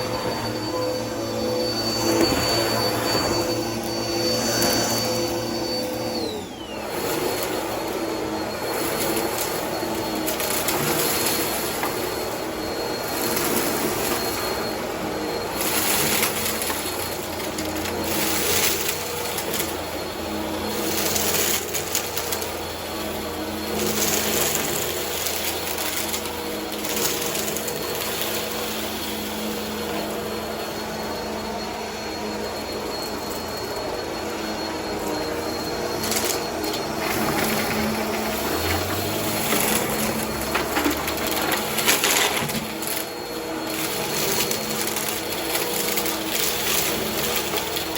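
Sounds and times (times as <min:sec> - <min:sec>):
vacuum cleaner on carpet: 0:00.0 - 0:47.9
debris crunching and rattling: 0:37.0 - 0:43.0.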